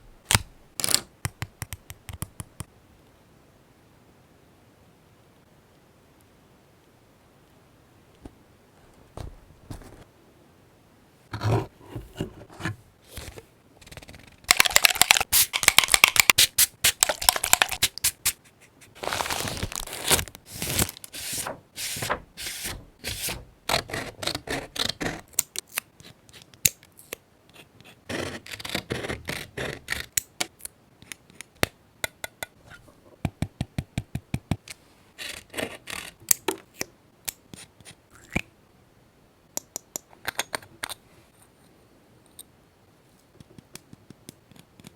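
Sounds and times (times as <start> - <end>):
sharp clicks and taps: 1.2 - 2.7
paper rustling and crinkling: 19.0 - 23.4.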